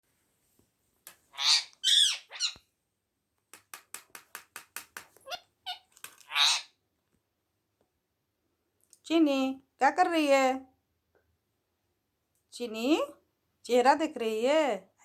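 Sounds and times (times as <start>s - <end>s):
parrot squawking: 1.3s - 2.6s, 5.2s - 6.7s.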